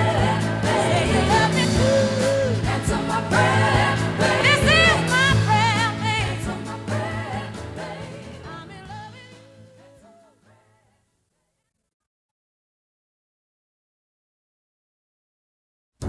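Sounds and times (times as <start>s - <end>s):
pop song with singer: 0.0s - 11.1s.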